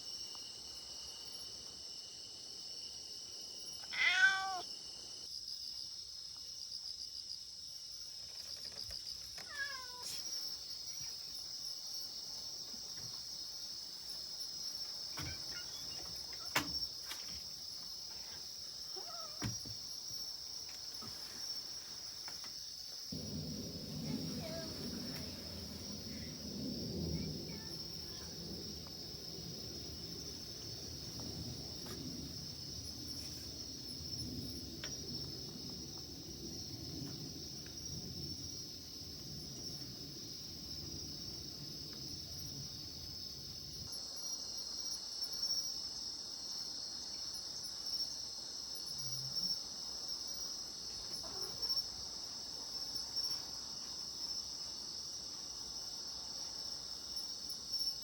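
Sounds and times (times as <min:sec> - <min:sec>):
insects chirring: 0:00.0 - 0:58.0
low rumble: 0:23.2 - 0:43.6.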